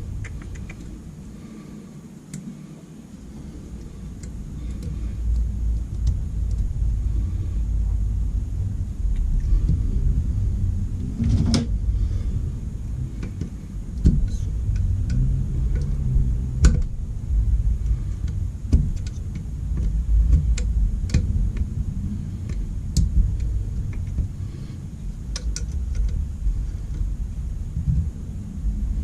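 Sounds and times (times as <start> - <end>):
steady low rumble: 0.0 - 29.0
metal parts clicking and knocking: 25.2 - 27.1.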